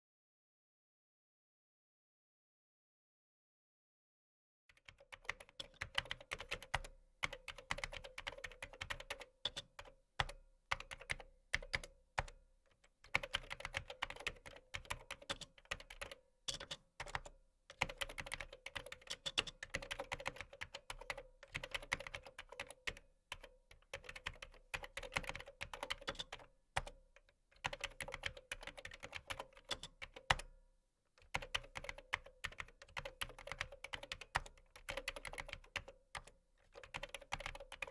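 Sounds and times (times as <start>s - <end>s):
computer keyboard typing: 4.8s - 12.4s, 13.0s - 27.0s, 27.6s - 30.5s, 31.2s - 37.9s.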